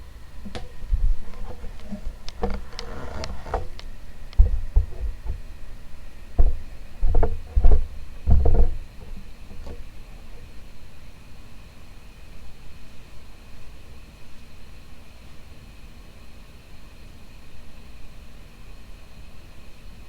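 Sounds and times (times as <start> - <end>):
ceiling fan wind buffeting microphone: 0.0 - 11.0.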